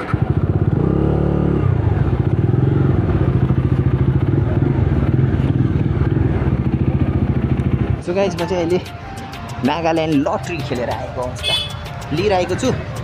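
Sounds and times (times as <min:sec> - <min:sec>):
motorcycle engine idling: 0:01.7 - 0:09.1, 0:10.6 - 0:13.0.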